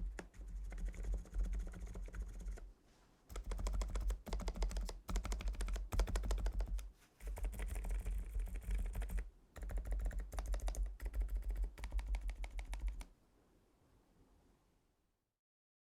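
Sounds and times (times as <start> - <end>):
fast typing on mechanical keyboard: 0.0 - 2.6, 3.3 - 13.1.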